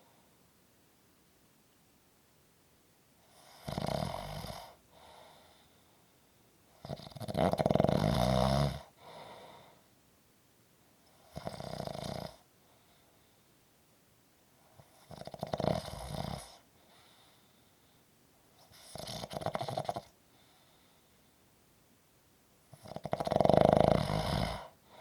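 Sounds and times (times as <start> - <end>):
person snoring: 3.3 - 4.8, 6.8 - 9.2, 15.0 - 16.6, 22.7 - 24.8.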